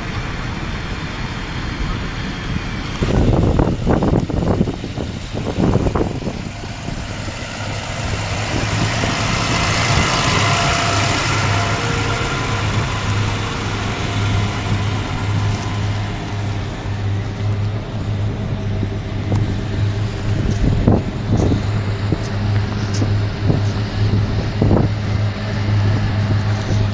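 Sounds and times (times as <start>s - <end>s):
baler machinery noise: 0.0s - 26.9s
diesel tractor engine under load: 0.0s - 26.9s.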